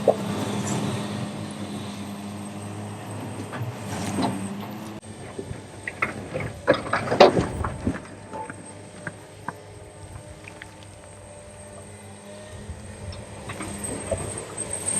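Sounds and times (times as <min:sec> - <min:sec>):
diesel engine humming: 0:00.0 - 0:14.9
excavator bucket clanking and scraping: 0:03.1 - 0:11.0, 0:13.1 - 0:14.9.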